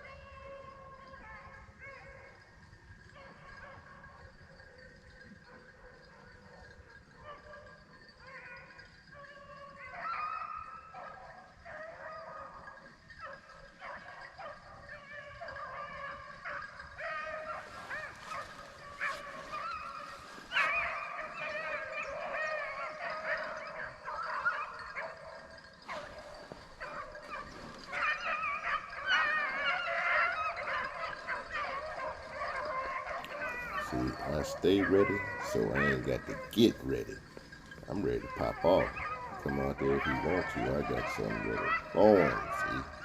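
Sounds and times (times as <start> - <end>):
dogs baying in chorus: 0.0 - 43.0.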